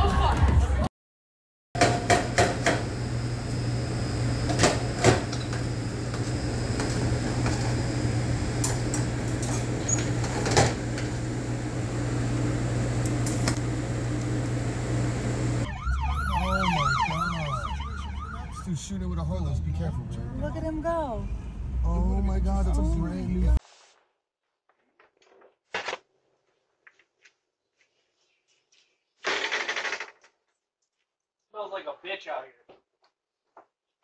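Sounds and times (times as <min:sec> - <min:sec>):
machine humming: 0:01.8 - 0:18.3.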